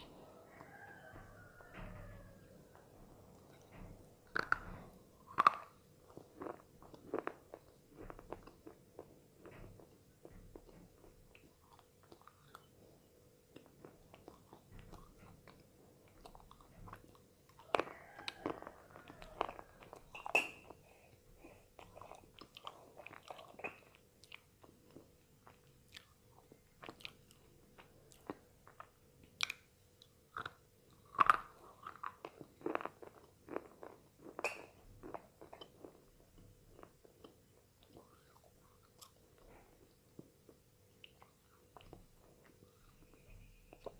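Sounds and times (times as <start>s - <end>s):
faint steady hum: 0.0s - 43.9s
pencils being chewed crunching: 3.5s - 10.0s, 21.4s - 29.6s, 30.3s - 43.9s.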